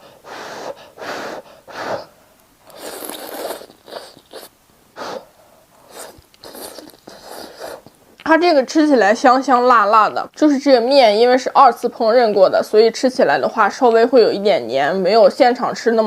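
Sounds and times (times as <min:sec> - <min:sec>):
person slurping noodles: 0:01.8 - 0:05.2, 0:05.8 - 0:08.0.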